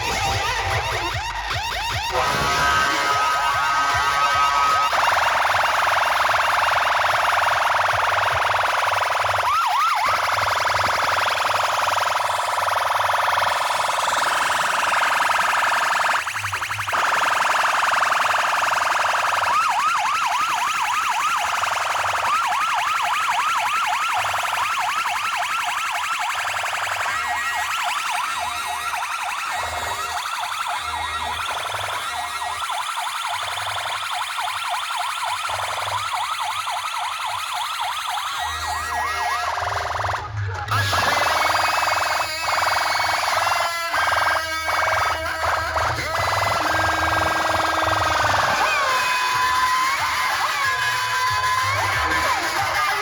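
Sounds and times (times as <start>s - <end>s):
pulsing bass: 0.0s - 5.9s
electronic siren whoops: 0.0s - 53.0s
high siren wail: 0.0s - 53.0s.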